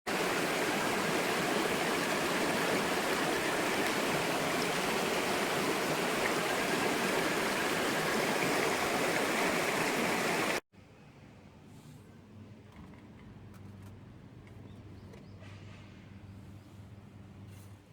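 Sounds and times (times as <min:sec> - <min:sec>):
running water rushing: 0:00.1 - 0:10.6.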